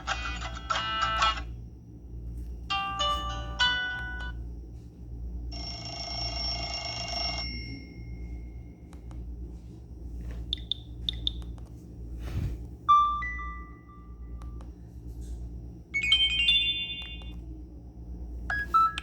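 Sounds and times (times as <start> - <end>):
electronic ringtone melodies: 2.7 - 4.3, 16.0 - 17.3, 18.5 - 19.0.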